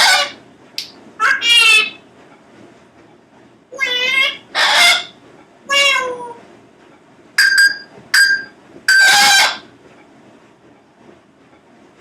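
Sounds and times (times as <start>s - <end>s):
parrot calling: 0.0s - 0.4s, 1.2s - 2.0s, 3.7s - 6.4s, 7.4s - 9.7s.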